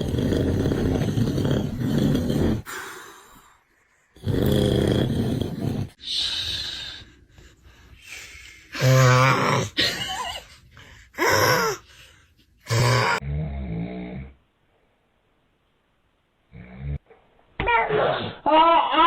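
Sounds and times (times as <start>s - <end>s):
person snoring loudly: 0.0s - 3.4s, 4.2s - 6.9s, 8.7s - 9.8s, 11.2s - 11.8s, 12.6s - 14.4s.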